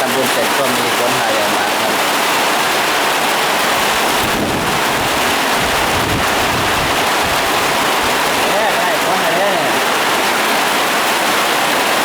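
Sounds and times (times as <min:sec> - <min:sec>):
heavy rain pouring: 0:00.0 - 0:12.0
wind buffeting microphone: 0:02.0 - 0:09.0.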